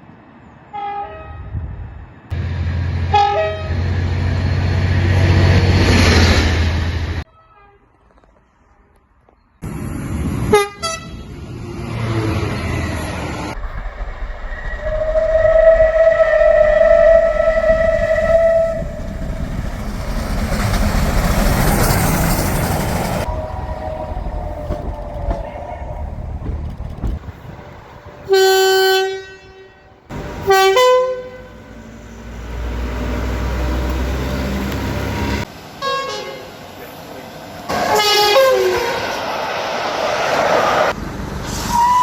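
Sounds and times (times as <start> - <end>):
train passing rush: 0.0 - 7.3, 9.6 - 42.0
train horn: 0.7 - 1.6, 3.0 - 3.9, 7.3 - 7.9, 10.5 - 11.3, 14.8 - 19.5, 23.2 - 26.2, 28.0 - 31.9, 35.8 - 36.6, 37.7 - 39.2
two-tone train horn blasts: 0.7 - 1.6, 3.0 - 3.9, 7.3 - 7.8, 10.5 - 11.3, 14.8 - 19.4, 28.0 - 31.9, 35.8 - 36.6, 37.8 - 39.1
low engine rumble: 11.6 - 35.5.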